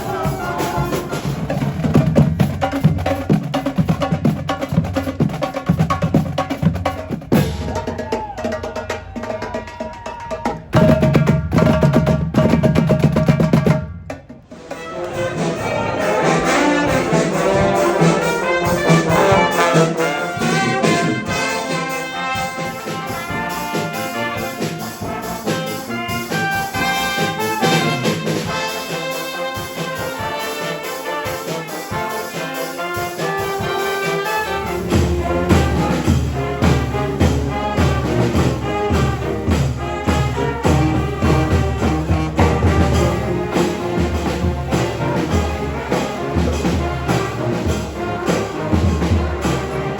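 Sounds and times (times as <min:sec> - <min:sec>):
brass band playing: 0:00.0 - 0:08.9, 0:10.6 - 0:49.9.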